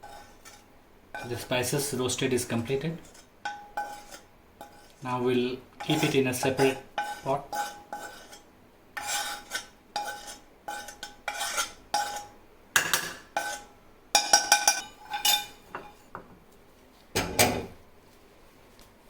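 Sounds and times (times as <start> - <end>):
spoon scraping and knocking bowl: 3.0 - 5.0, 5.8 - 8.4, 9.0 - 16.0.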